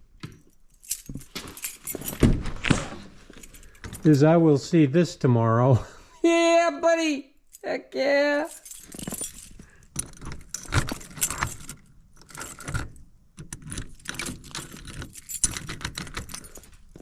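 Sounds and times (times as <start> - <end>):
small metal pieces jingling: 0.6 - 2.2, 8.4 - 12.8, 13.6 - 17.0
scuffing: 1.0 - 3.5.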